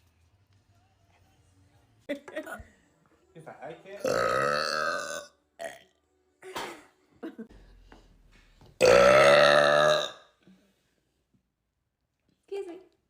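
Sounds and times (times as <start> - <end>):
woman burping: 4.0 - 5.8, 8.8 - 10.3.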